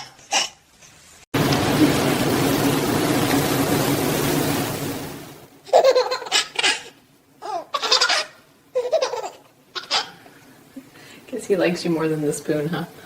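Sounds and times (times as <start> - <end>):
baby laughing: 0.0 - 0.6, 5.6 - 10.2.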